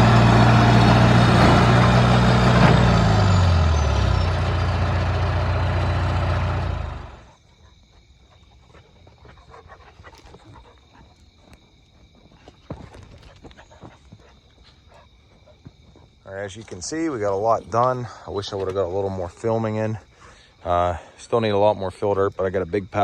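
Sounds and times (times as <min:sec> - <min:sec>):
diesel engine running loud: 0:00.0 - 0:07.3.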